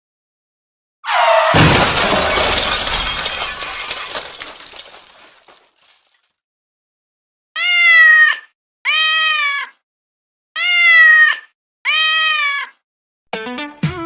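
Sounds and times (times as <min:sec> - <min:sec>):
cat meowing: 0:07.6 - 0:09.8, 0:10.6 - 0:12.8.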